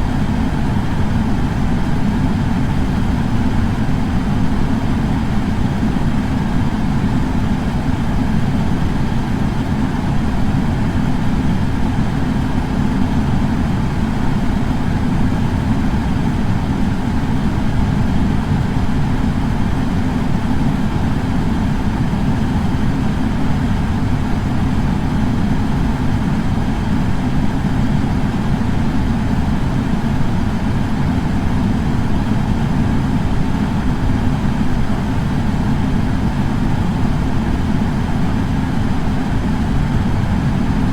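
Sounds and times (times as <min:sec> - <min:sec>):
air purifier fan humming: 0:00.0 - 0:40.9.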